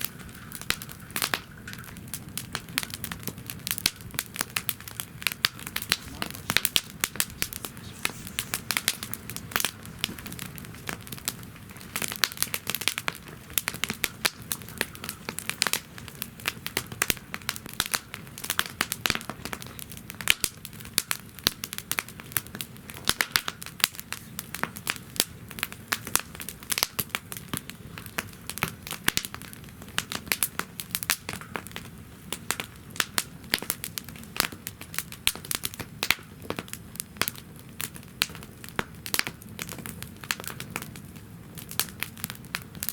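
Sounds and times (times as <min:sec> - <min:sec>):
low rush of flame: 0:00.0 - 0:17.8
wood fire crackling: 0:00.0 - 0:42.9.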